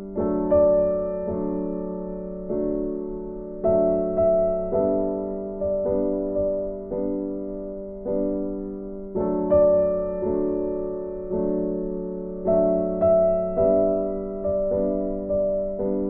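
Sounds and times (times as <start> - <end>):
soft piano chords: 0.0 - 16.0.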